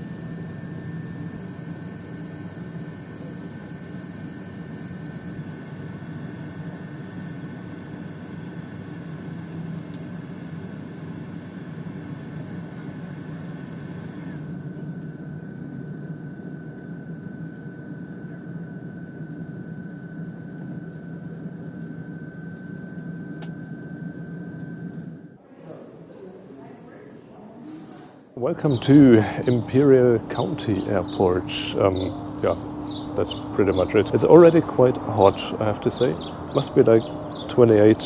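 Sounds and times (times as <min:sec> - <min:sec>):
turboprop cabin drone and whine: 0:28.5 - 0:38.0.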